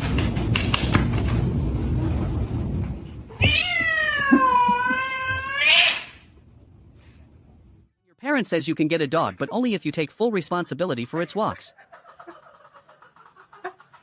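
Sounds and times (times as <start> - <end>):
rustling and knocking: 0.0 - 4.0
cat meowing: 3.3 - 6.3.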